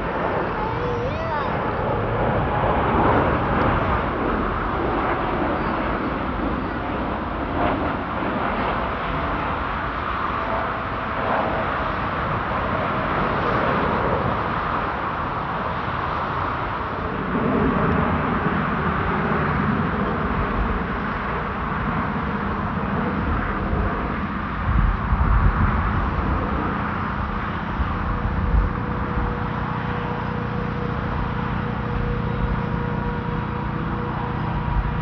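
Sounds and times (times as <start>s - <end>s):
jet engines rushing: 0.0s - 35.0s
deep rumble: 22.9s - 35.0s.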